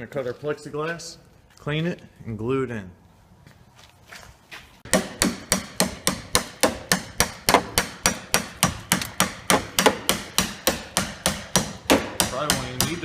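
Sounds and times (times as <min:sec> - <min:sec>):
rapid hammer-like strikes on glass: 0:04.9 - 0:13.0.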